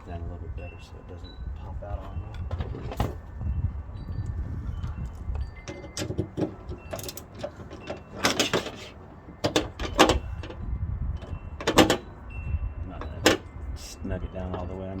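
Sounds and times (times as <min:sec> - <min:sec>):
metal and plastic clatter: 0:05.6 - 0:10.6, 0:11.2 - 0:12.1, 0:13.1 - 0:13.4.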